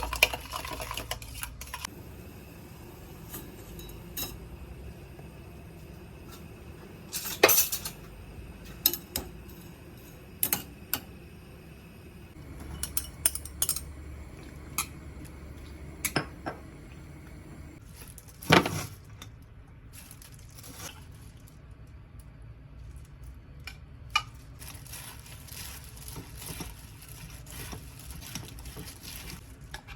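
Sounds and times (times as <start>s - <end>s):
dishes and cutlery clinking: 3.2s - 4.5s, 7.1s - 9.8s, 12.4s - 17.7s.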